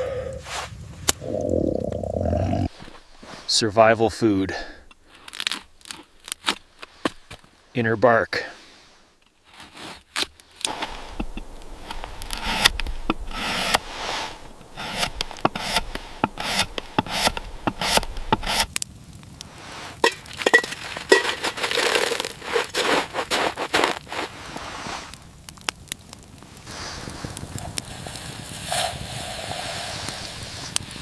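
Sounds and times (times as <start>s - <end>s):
bark cracking and snapping: 4.8s - 7.3s
bark being scraped: 9.4s - 18.7s, 20.1s - 24.2s.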